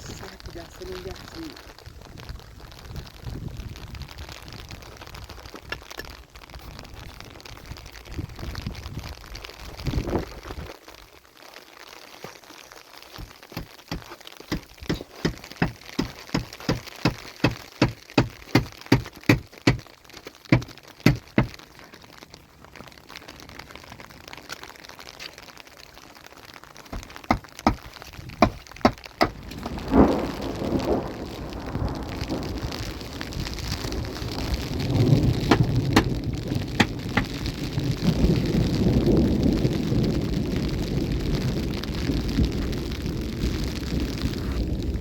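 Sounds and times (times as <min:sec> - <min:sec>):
sharp crunching knocks: 0:13.2 - 0:21.6, 0:26.9 - 0:29.9, 0:35.4 - 0:37.4.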